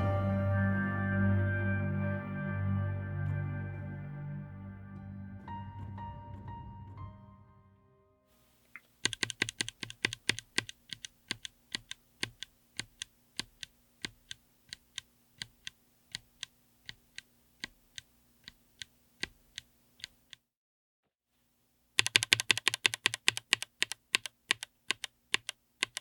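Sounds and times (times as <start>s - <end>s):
music: 0.0s - 8.3s
mechanical keyboard keystrokes: 9.0s - 20.4s, 22.0s - 26.0s.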